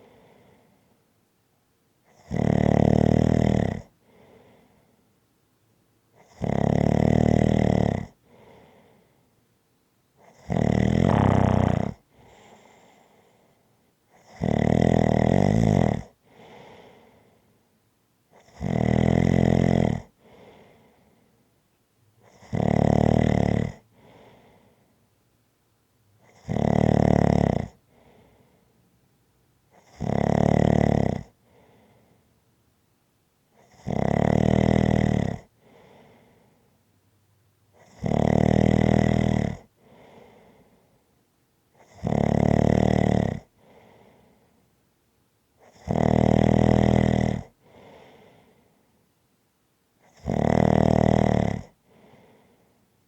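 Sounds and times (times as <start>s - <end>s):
faint breath: 0.0s - 1.1s, 4.0s - 5.2s, 8.2s - 9.4s, 11.0s - 14.0s, 16.2s - 17.7s, 20.1s - 21.5s, 23.8s - 25.1s, 27.8s - 28.9s, 31.4s - 32.4s, 35.5s - 36.9s, 39.7s - 41.2s, 43.5s - 44.8s, 47.6s - 49.2s, 51.8s - 53.0s
person snoring: 10.4s - 12.0s, 50.1s - 51.7s.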